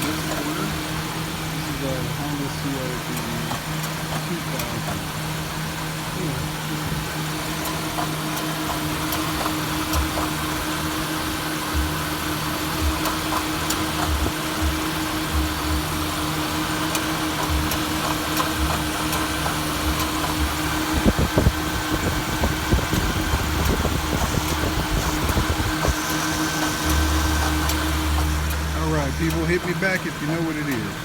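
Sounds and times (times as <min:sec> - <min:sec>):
car engine idling: 0:00.0 - 0:31.0
clicking from engine: 0:00.0 - 0:31.0
low thumps: 0:18.6 - 0:30.2.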